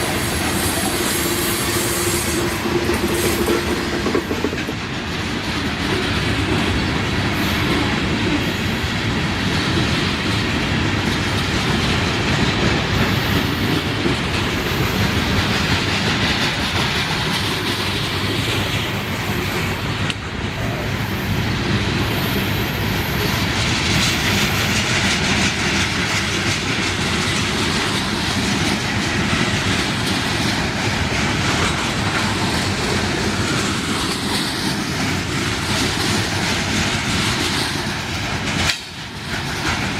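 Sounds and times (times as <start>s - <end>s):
train wheel squeal: 0.0s - 4.8s
freight train cars rolling: 0.0s - 39.9s
wheels clacking over rail joints: 0.0s - 39.9s.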